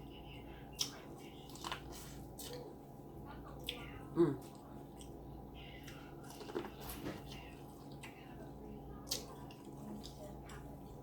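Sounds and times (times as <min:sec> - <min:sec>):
wet chewing: 0:00.7 - 0:02.8, 0:03.5 - 0:11.0.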